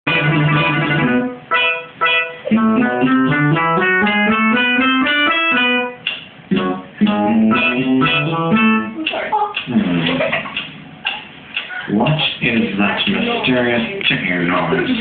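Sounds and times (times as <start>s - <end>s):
bass line: 0.1s - 1.5s, 2.4s - 9.0s, 9.6s - 10.5s
plucked guitar-like melody: 0.1s - 10.5s.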